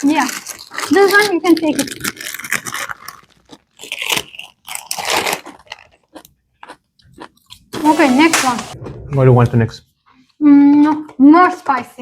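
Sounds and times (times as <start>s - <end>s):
chewing crunchy chips: 0.0s - 7.8s.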